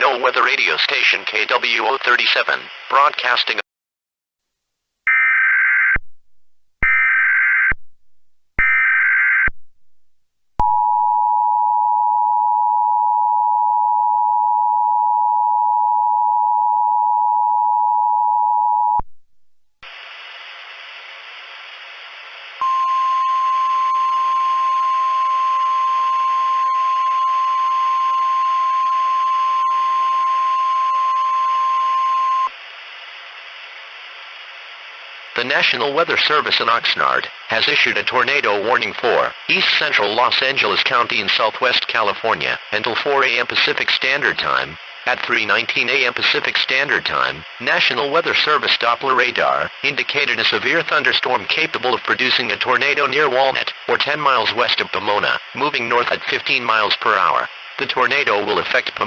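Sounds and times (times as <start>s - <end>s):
radio static hiss: 0.0s - 3.6s, 19.8s - 59.0s
steady warning tone: 22.6s - 32.5s
two-tone attention signal: 22.6s - 32.5s
warbling data bursts: 22.6s - 32.5s.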